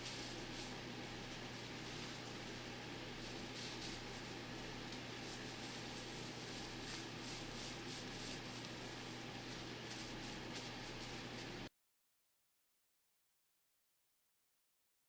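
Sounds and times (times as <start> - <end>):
soft rustles: 0.0 - 11.7
steady low hum: 0.0 - 11.7.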